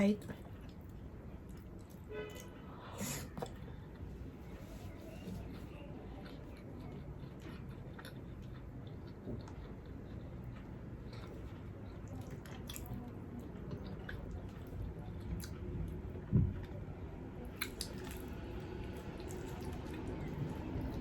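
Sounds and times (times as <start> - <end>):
wet chewing mouth sounds: 5.3 - 16.0, 17.6 - 21.0.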